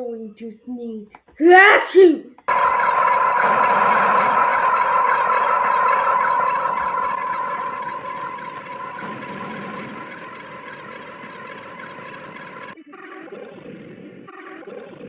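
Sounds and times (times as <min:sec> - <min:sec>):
high steady hum: 0:02.5 - 0:12.8
machine rattling: 0:02.5 - 0:12.8.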